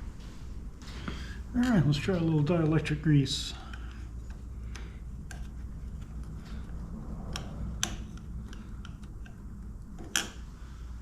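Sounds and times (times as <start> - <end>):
steady low hum: 0.0 - 11.0
small parts clicking and tapping: 3.7 - 10.4.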